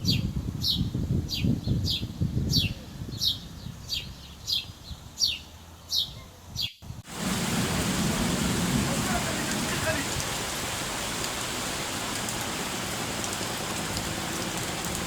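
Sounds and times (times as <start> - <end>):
bird chirping: 0.0 - 6.8
heavy rain hiss: 7.0 - 15.0.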